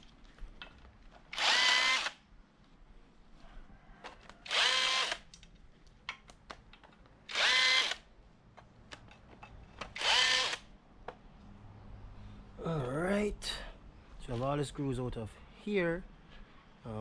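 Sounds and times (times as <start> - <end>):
power drill spinning: 1.3 - 2.2, 4.4 - 5.3, 7.3 - 8.0, 9.9 - 10.6.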